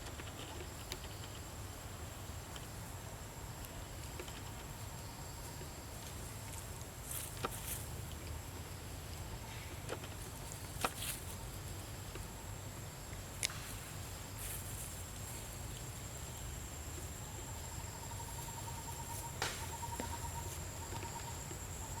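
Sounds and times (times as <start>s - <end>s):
insect high-pitched drone: 14.0s - 22.0s
insect pulsing trill: 14.6s - 22.0s.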